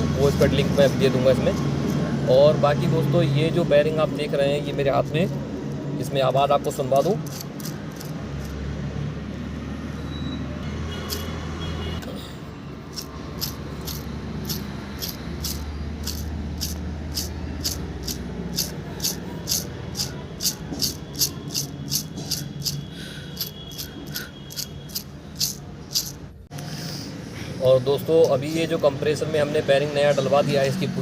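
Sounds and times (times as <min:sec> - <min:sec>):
bearing clicking: 0:06.8 - 0:08.6, 0:11.1 - 0:11.4, 0:12.9 - 0:26.6.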